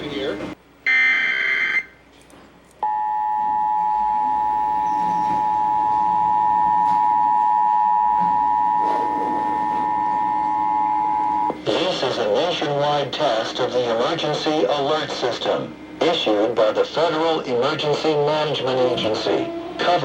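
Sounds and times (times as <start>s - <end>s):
steady two-tone alarm: 0.8s - 2.0s, 2.8s - 17.4s.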